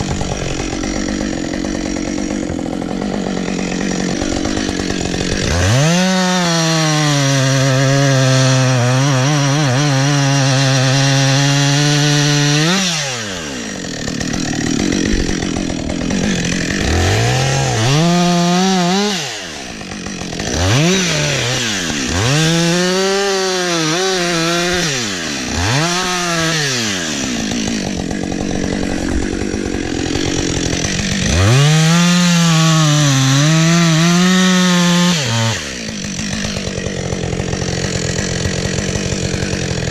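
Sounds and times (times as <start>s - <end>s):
chainsaw cutting wood: 0.0s - 39.9s.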